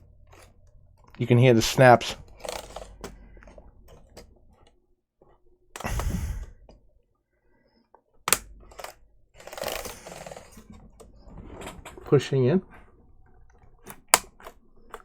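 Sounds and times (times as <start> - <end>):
plastic handling noise: 8.1 - 15.0
plastic tabs clicking: 13.4 - 15.0
sharp plastic snap: 13.9 - 15.0.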